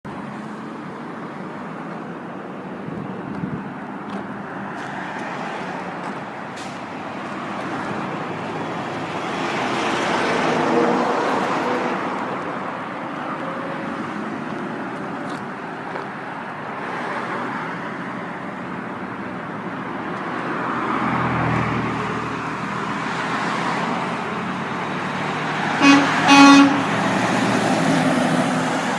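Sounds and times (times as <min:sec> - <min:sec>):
road traffic passing: 0:00.1 - 0:28.9
truck horn toots: 0:25.8 - 0:27.0.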